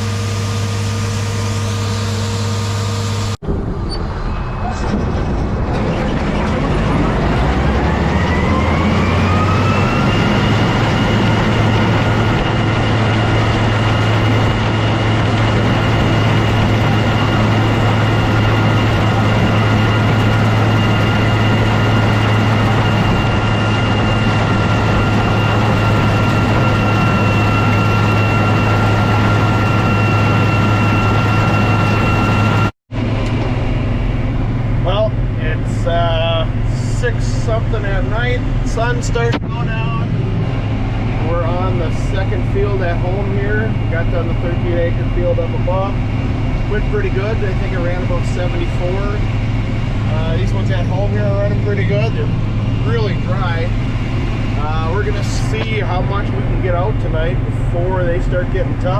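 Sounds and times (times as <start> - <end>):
combine harvester whine: 0.0 - 58.9
strong low drone: 0.0 - 58.9.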